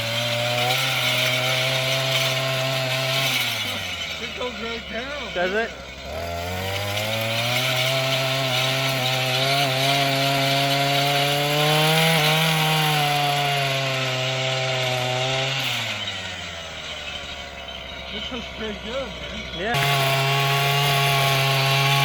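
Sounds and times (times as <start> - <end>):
two-stroke engine revving: 0.0 - 22.0.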